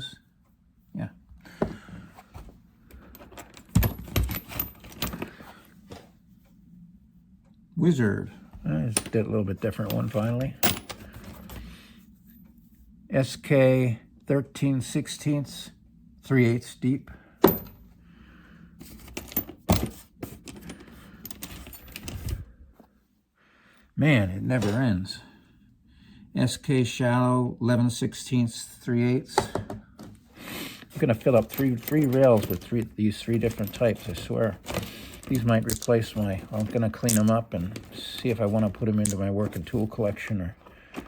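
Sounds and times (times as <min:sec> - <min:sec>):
metal sockets clinking: 0:08.9 - 0:11.7, 0:31.0 - 0:39.8.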